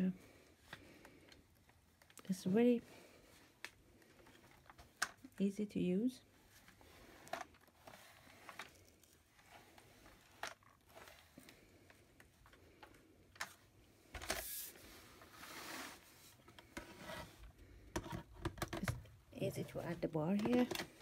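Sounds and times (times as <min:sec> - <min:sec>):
plastic sliding and scraping: 0:06.3 - 0:21.0
plastic parts clicking: 0:20.3 - 0:21.0.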